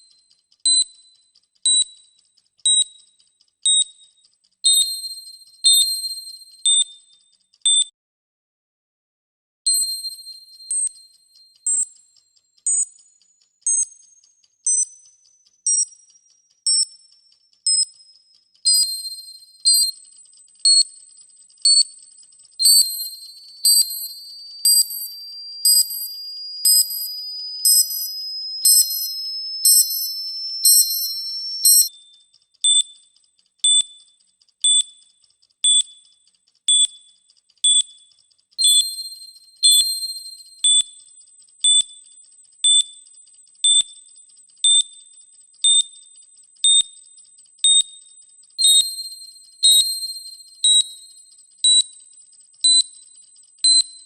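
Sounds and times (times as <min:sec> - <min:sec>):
high-pitched electronic beeps: 0:15.7 - 0:20.1, 0:21.7 - 0:31.9, 0:38.6 - 0:40.9, 0:48.6 - 0:52.0.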